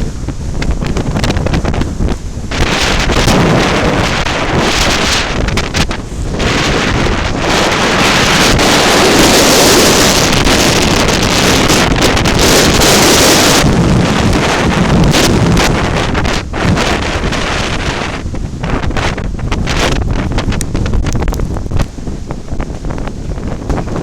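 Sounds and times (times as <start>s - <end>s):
sea surf: 0.0s - 24.0s
wind buffeting microphone: 0.0s - 24.0s.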